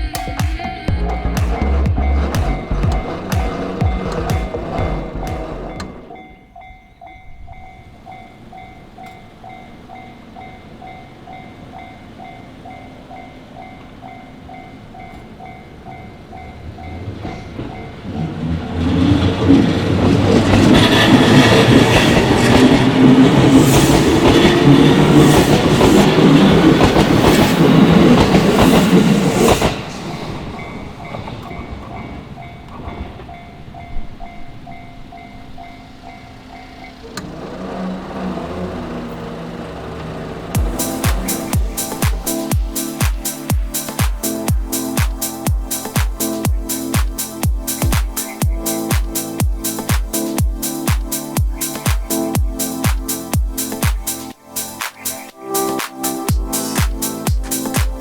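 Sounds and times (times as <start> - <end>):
train wheels clattering on rails: 0.0 - 54.2
electric train passing: 0.0 - 58.0
level crossing warning bell ringing: 0.0 - 58.0.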